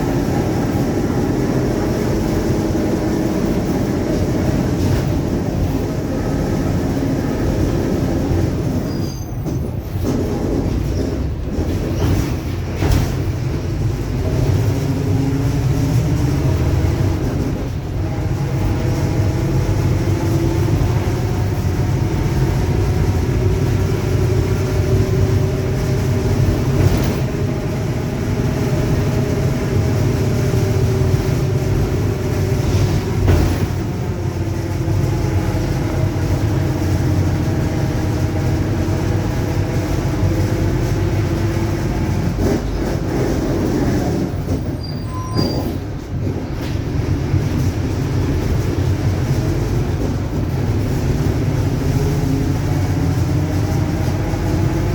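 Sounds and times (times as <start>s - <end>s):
bus diesel engine rumble: 0.0s - 54.9s.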